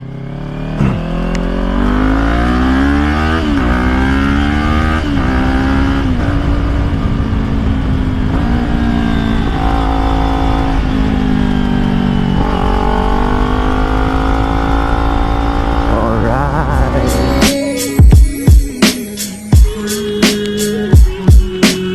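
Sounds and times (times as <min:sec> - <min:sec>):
motorcycle engine accelerating: 0:00.0 - 0:18.8
low wind rumble: 0:03.3 - 0:17.1.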